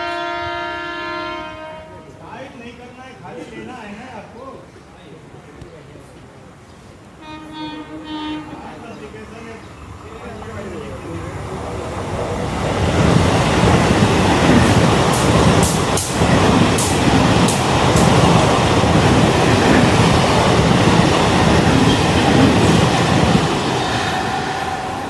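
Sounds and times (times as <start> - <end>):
train wheels rumbling on rails: 9.3 - 25.0
sharp clacks of train wheels: 12.5 - 25.0.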